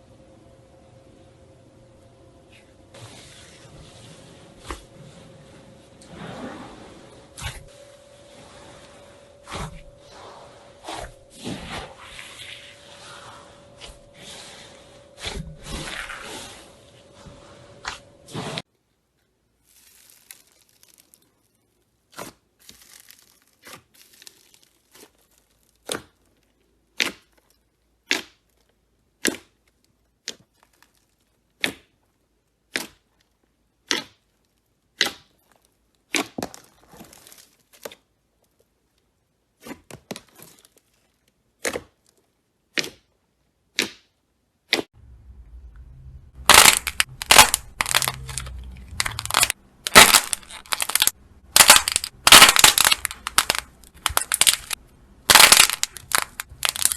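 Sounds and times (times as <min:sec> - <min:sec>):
slime crackling and squishing: 0:19.6 - 0:43.1, 0:46.4 - 0:56.9
sharp pops or clicks: 0:46.4 - 0:56.9.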